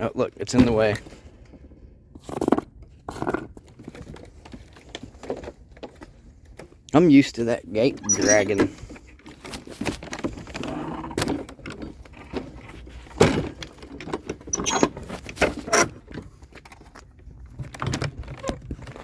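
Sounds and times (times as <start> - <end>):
metal gate scraping along ground: 8.0 - 8.8.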